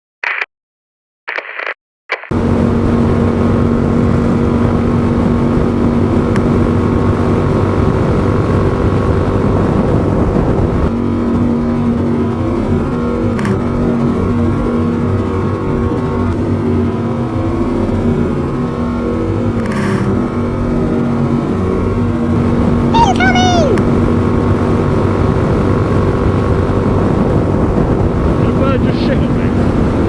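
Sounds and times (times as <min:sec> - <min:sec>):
wind and road noise: 0:01.6 - 0:30.0
motorcycle engine running: 0:16.3 - 0:17.7.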